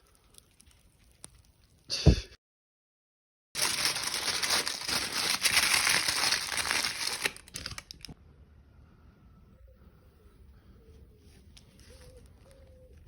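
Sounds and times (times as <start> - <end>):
paper crumpling: 3.6 - 8.2.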